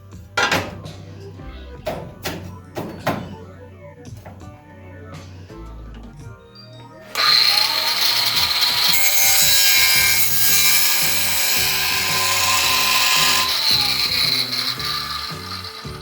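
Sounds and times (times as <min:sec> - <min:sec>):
background music: 0:00.0 - 0:16.0
handheld power tool running: 0:07.1 - 0:16.0.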